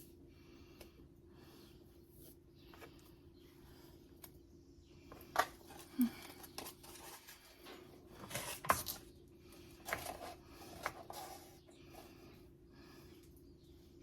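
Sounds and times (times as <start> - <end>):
dough crinkling and tapping: 5.0 - 11.2.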